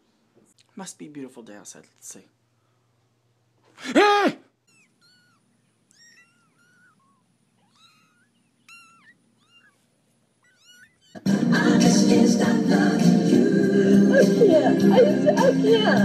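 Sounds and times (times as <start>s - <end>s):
cat mewing chirps: 4.5s - 11.2s
loud music: 11.3s - 16.0s.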